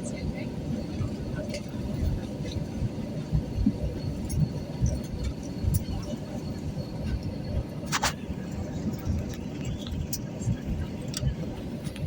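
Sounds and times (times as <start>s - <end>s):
airliner cabin rumble: 0.0s - 12.0s.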